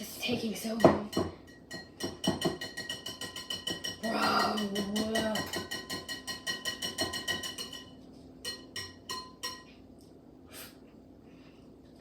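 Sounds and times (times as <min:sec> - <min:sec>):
ringing taps on bowl: 0:00.8 - 0:09.7
whisk clinking against bowl: 0:00.8 - 0:09.7.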